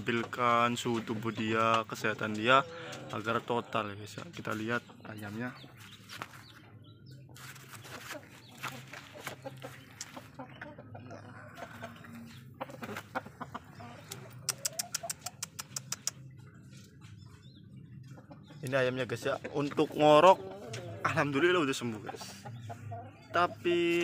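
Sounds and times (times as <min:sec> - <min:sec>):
chickens clucking: 0:00.0 - 0:24.0
sharp clicks: 0:14.1 - 0:16.2.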